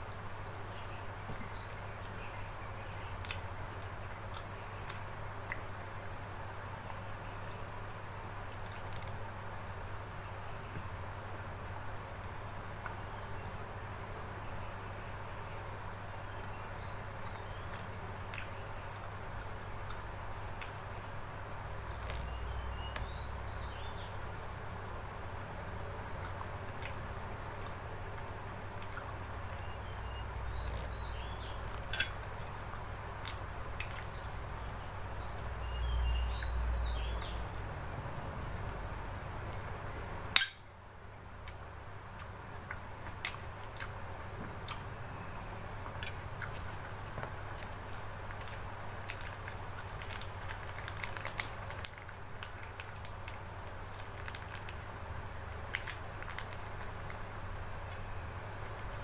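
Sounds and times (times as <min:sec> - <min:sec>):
person chewing: 0:03.2 - 0:05.9, 0:45.8 - 0:54.8
cutlery clinking against dish: 0:31.9 - 0:32.2, 0:40.4 - 0:40.7.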